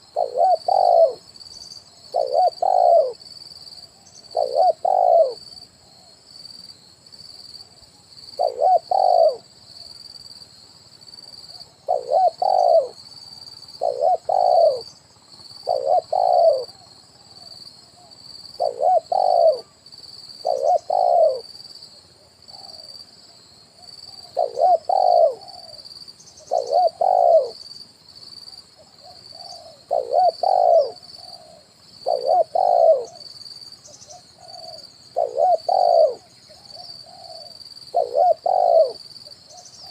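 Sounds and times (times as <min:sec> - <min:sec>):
dove cooing: 0:00.0 - 0:01.3, 0:01.9 - 0:03.2, 0:04.0 - 0:05.6, 0:08.4 - 0:09.5, 0:11.6 - 0:13.0, 0:13.7 - 0:19.7, 0:20.4 - 0:21.6, 0:22.3 - 0:23.0, 0:24.1 - 0:27.6, 0:28.8 - 0:39.9.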